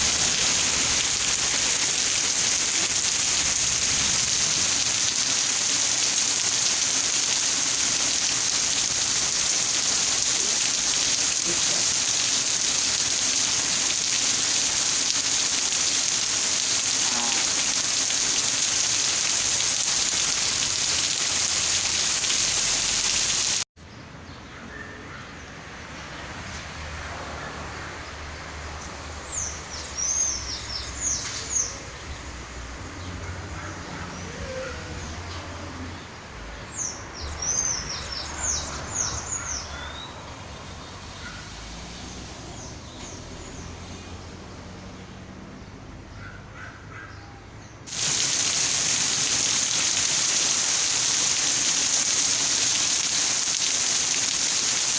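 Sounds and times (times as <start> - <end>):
heavy rain hiss: 0.0 - 23.7, 47.9 - 54.9
outdoor ambience: 0.0 - 54.9.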